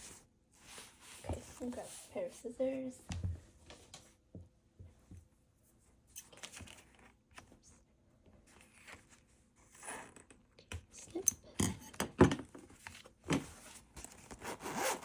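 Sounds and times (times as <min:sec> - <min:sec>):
soft fabric rustling: 0:00.0 - 0:04.2.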